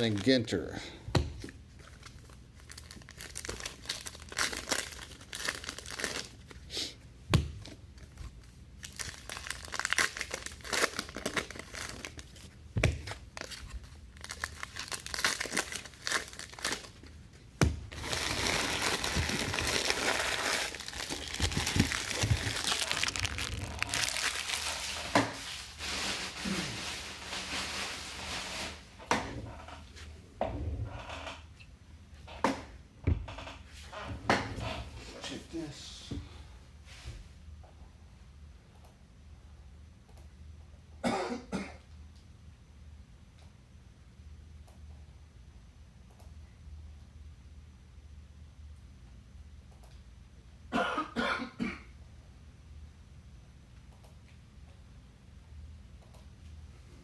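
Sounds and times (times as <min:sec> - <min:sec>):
card pack wrappers tearing and crinkling: 0:00.0 - 0:00.4, 0:01.9 - 0:06.6, 0:08.8 - 0:17.1, 0:17.9 - 0:28.3.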